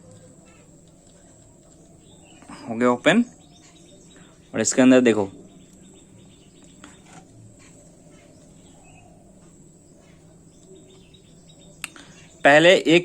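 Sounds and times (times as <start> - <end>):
faint bird chirps: 0.0 - 13.0
light clicks of small parts: 0.1 - 2.5, 11.8 - 12.2.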